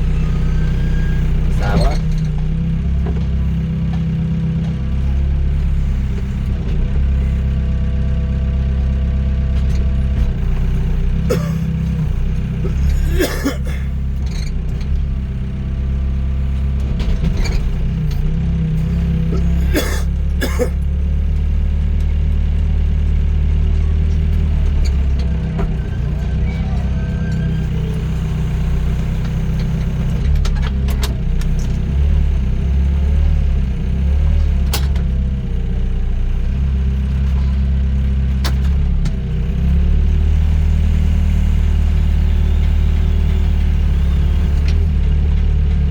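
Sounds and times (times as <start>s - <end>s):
hydraulic whine: 0.0s - 3.6s
excavator diesel engine running: 0.0s - 45.9s.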